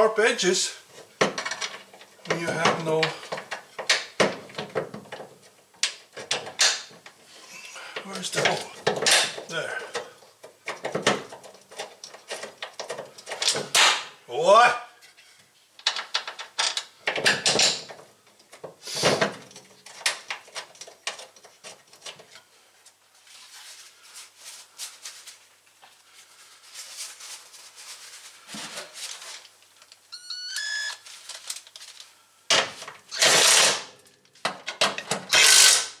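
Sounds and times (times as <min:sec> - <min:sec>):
brief squeak: 0:30.2 - 0:31.0.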